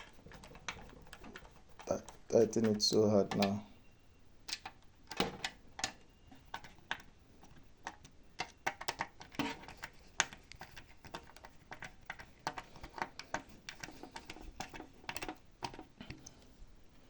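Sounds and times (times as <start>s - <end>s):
light clicks and taps on metal: 0.6s - 3.6s.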